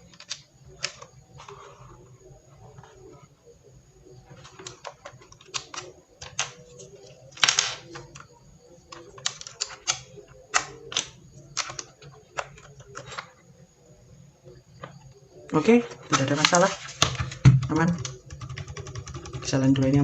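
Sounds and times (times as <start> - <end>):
mechanical keyboard keys clacking: 0.0 - 1.9, 4.3 - 8.3, 8.9 - 13.3, 15.9 - 20.0.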